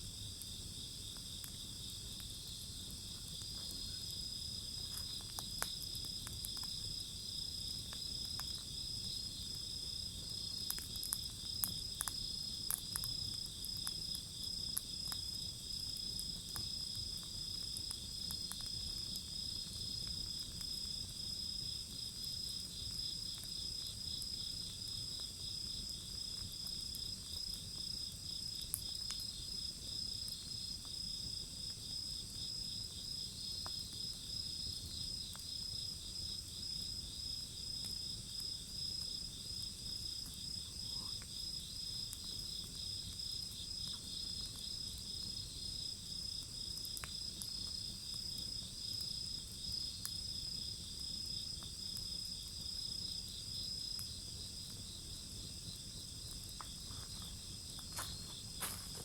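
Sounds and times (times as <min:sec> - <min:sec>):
wood fire pops: 0:00.2 - 0:35.9, 0:51.5 - 0:59.0
insects chirping: 0:00.2 - 0:59.0.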